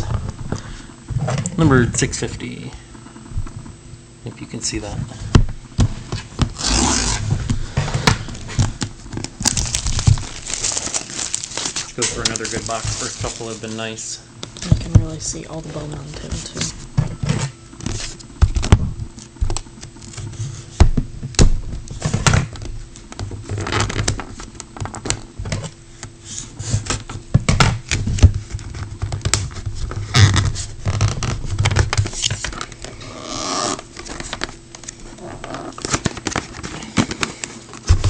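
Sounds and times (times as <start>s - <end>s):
plastic wrap tearing and crinkling: 6.5s - 7.4s, 8.3s - 14.1s, 21.4s - 25.2s, 27.8s - 38.0s.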